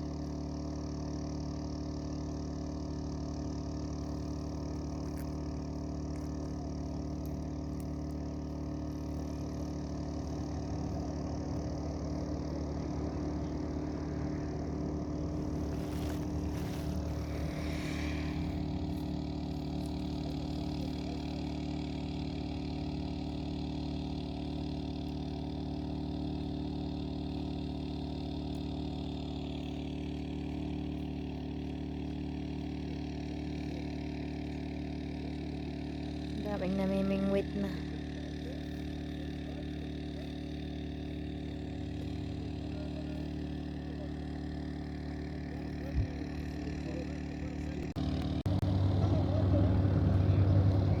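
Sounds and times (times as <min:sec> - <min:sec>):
engine humming steadily: 0:00.0 - 0:51.0.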